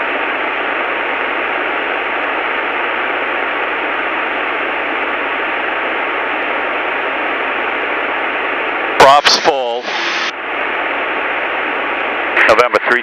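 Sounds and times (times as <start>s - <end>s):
headset intercom hiss: 9.0s - 10.3s.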